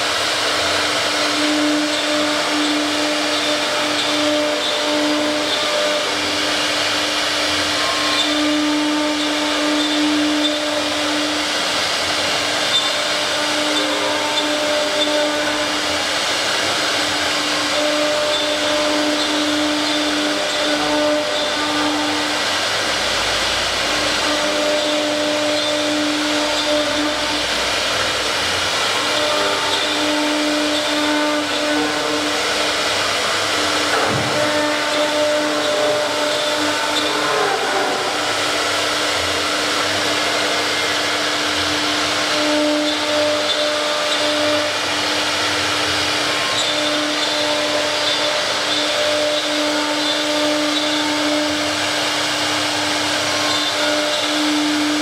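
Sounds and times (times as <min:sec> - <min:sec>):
router motor whine and hiss: 0:00.0 - 0:55.0.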